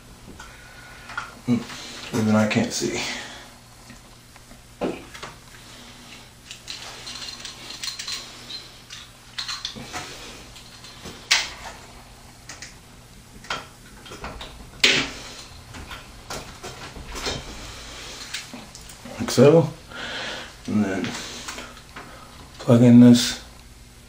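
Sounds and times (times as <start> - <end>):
hardware clicks and clinks: 6.1 - 11.8.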